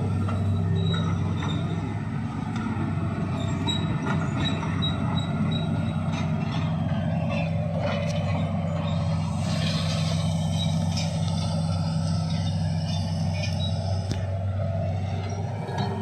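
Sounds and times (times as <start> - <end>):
excavator diesel engine running: 0.0 - 16.0
metal parts squeaking: 8.7 - 14.2.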